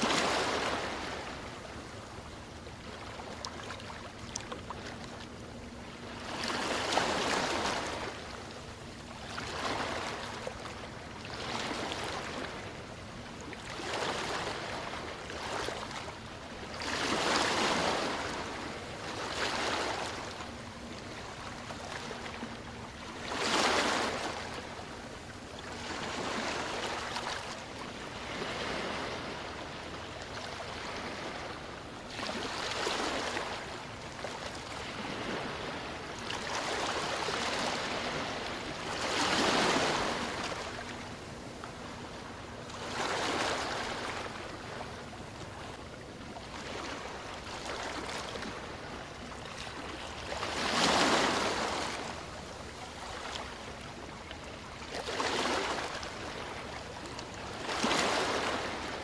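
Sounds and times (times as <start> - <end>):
ocean waves washing in: 25.8 - 34.0.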